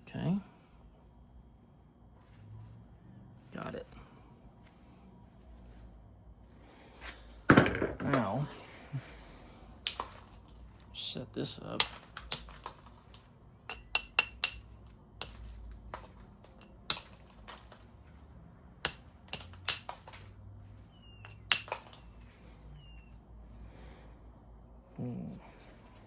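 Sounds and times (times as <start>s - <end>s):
tool striking stone clicks: 9.8s - 10.4s, 11.8s - 17.8s, 18.8s - 20.3s, 21.2s - 22.1s.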